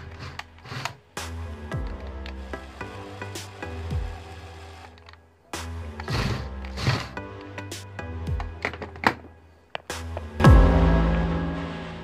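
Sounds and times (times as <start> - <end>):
background music: 0.0 - 12.0
sharp hit: 10.4 - 12.0.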